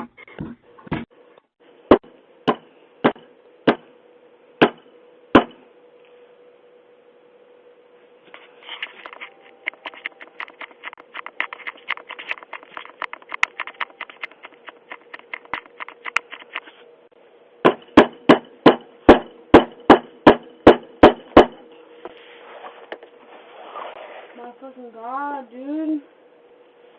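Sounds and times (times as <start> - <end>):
heavy bangs on a door: 17.6 - 21.6.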